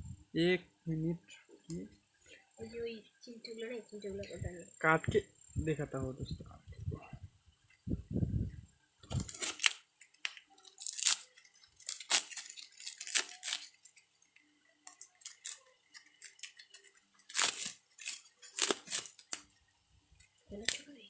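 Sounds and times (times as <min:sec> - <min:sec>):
packaging ripping and rustling: 0:09.0 - 0:14.0, 0:14.9 - 0:19.6.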